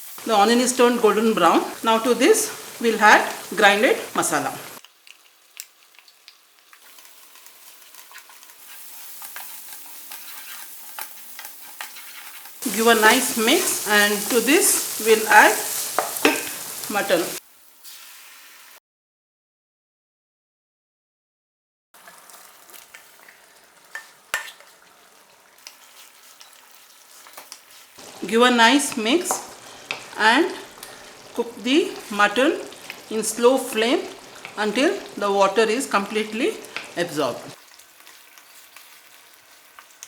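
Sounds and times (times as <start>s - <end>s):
spices sizzling in hot oil: 0.0s - 18.8s, 22.0s - 40.0s
spoon clinking and scraping pot: 6.8s - 16.9s, 22.1s - 24.9s, 25.6s - 37.1s.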